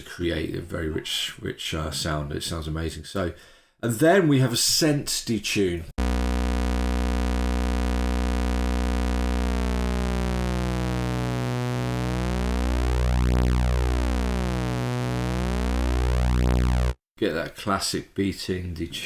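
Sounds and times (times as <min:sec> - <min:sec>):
synthesizer sustained note beating: 0:06.0 - 0:17.0.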